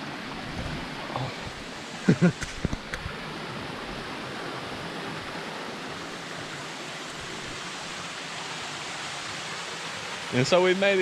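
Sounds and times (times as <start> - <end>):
flowing water rushing: 0.0 - 11.0.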